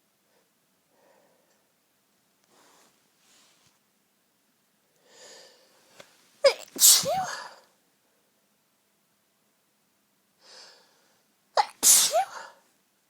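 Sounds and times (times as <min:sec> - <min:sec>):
woman sneezing: 0:06.5 - 0:07.6, 0:11.6 - 0:12.6.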